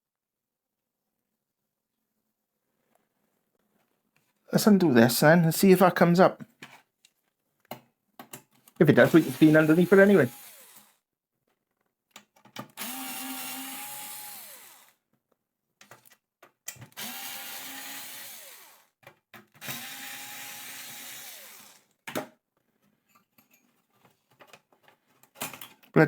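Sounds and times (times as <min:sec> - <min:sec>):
electric screwdriver motor spinning: 0:09.0 - 0:11.0, 0:12.8 - 0:15.0, 0:17.0 - 0:18.9, 0:19.6 - 0:21.9.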